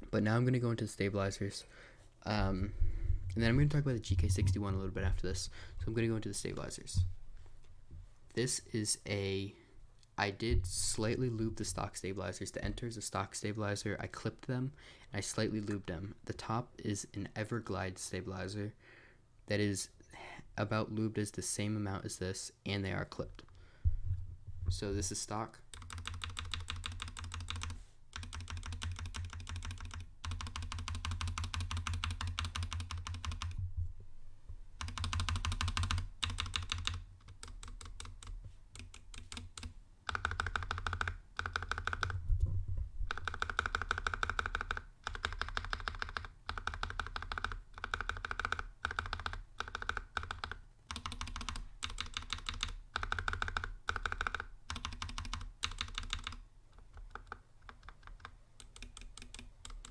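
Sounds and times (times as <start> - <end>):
mechanical keyboard key presses: 34.8 - 42.2, 43.1 - 56.4.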